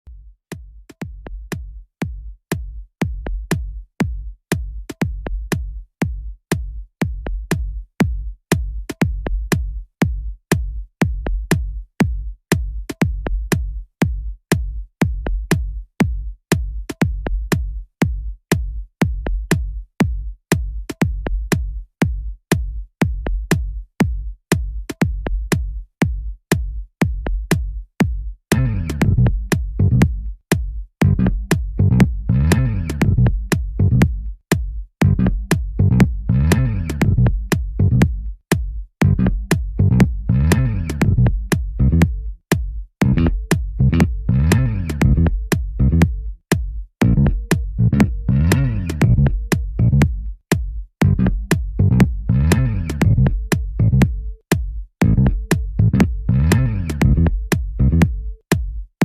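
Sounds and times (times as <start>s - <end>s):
electronic music with drum-machine beat: 28.5s - 58.9s.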